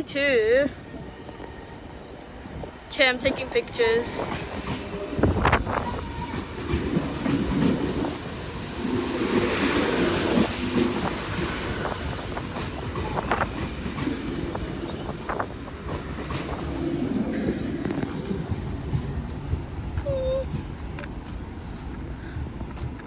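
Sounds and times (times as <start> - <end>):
train rumble: 0.0 - 23.0.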